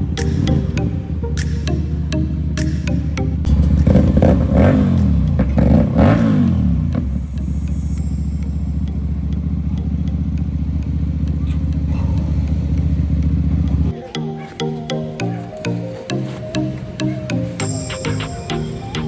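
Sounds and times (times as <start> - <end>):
motorcycle engine revving: 1.9 - 14.0.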